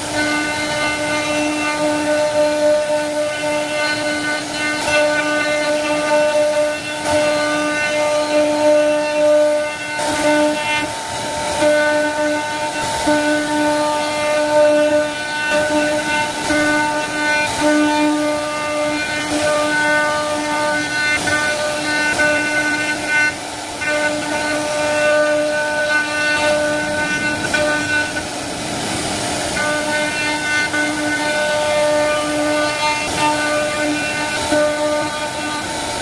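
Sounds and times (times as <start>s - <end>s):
bit cutting wood: 0.0s - 36.0s
router spindle whine: 0.0s - 36.0s.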